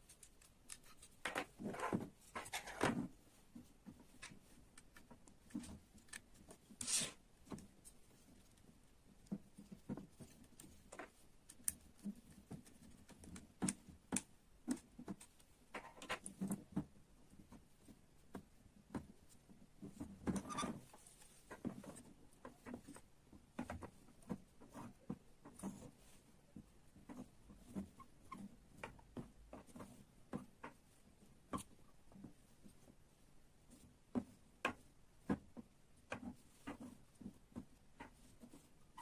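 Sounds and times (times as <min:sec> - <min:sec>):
plastic parts clicking and tapping: 0:00.0 - 0:06.6, 0:07.5 - 0:17.6.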